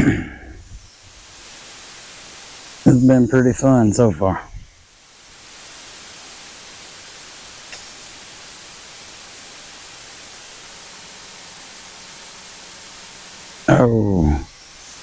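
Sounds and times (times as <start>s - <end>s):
steady hiss: 0.0s - 15.0s
faint tick: 7.7s - 7.9s.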